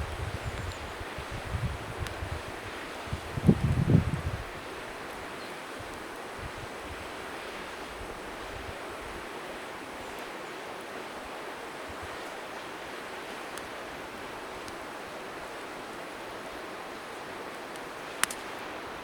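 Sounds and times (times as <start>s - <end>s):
wind buffeting microphone: 0.0s - 4.9s, 5.8s - 7.1s
bonfire crackles: 0.0s - 19.0s
river water rushing: 4.5s - 19.0s.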